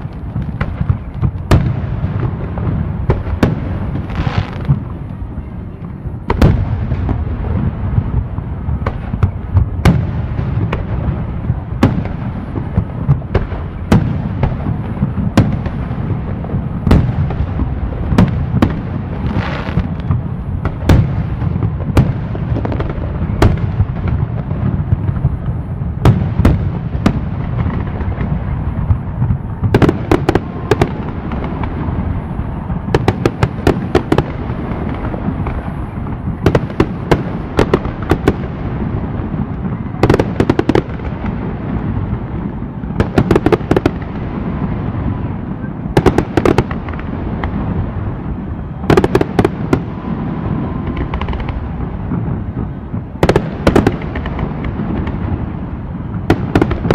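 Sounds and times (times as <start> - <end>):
firework hiss: 0.0 - 56.9
fireworks rumble and bangs: 0.0 - 56.9
rapid firework crackling: 0.0 - 56.9.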